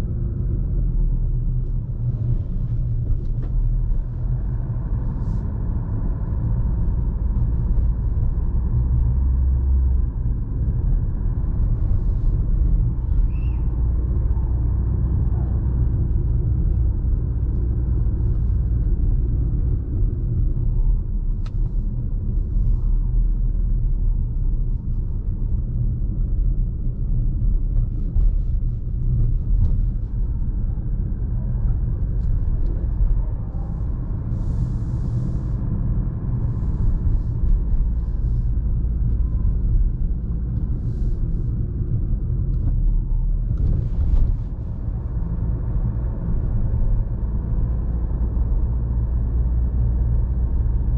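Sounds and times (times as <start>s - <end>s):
diesel engine rumble: 0.0s - 50.9s
road noise: 0.0s - 50.9s.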